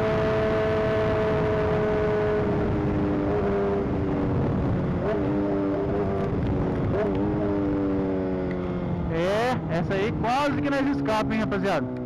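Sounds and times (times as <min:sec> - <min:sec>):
wind noise: 0:00.0 - 0:08.2
motorcycle engine running: 0:00.0 - 0:12.0.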